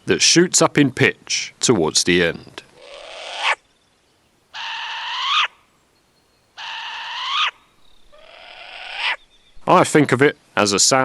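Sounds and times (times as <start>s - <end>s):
owl screeching: 2.8s - 3.6s, 4.5s - 5.7s, 6.5s - 9.3s.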